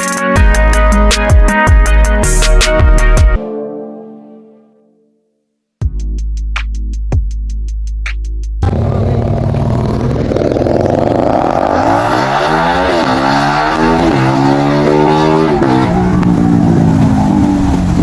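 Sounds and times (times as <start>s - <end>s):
motorcycle engine accelerating: 8.6s - 18.0s.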